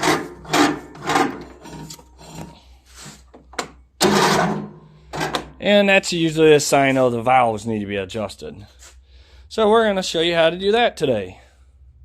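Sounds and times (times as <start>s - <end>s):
electric starter grinding: 4.0s - 5.5s.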